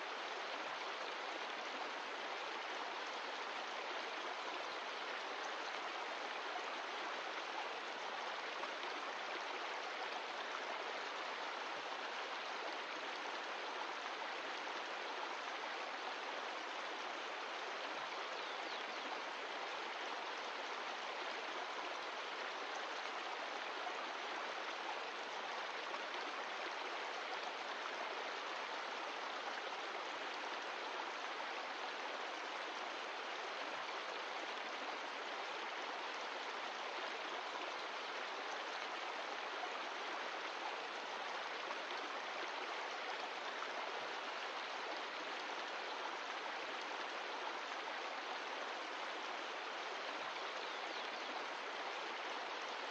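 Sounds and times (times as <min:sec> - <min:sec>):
mountain stream flowing: 0:00.0 - 0:52.9.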